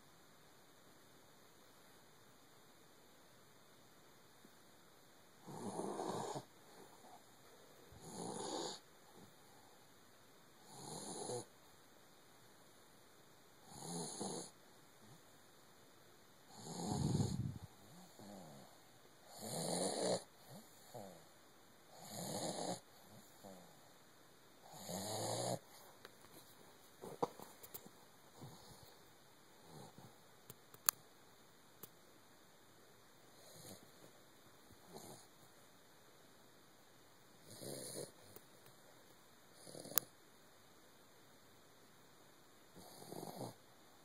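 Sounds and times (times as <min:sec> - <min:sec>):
puppy snoring: 0:05.4 - 0:09.4, 0:10.6 - 0:11.5, 0:13.6 - 0:15.2, 0:16.5 - 0:21.3, 0:21.9 - 0:23.8, 0:24.6 - 0:25.8, 0:27.0 - 0:29.0, 0:29.6 - 0:30.2, 0:33.3 - 0:34.0, 0:34.8 - 0:35.3, 0:37.4 - 0:38.4, 0:39.5 - 0:40.1, 0:42.7 - 0:43.6.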